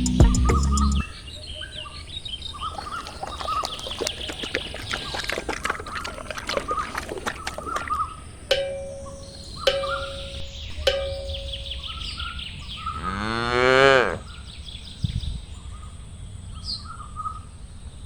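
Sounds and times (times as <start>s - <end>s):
birds chirping: 0.0s - 13.4s.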